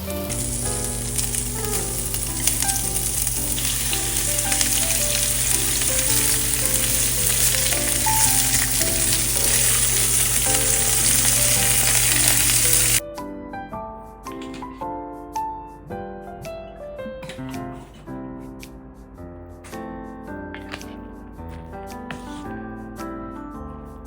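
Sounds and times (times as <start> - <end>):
food sizzling in a pan: 0.0 - 13.0
soft background music: 0.0 - 24.0.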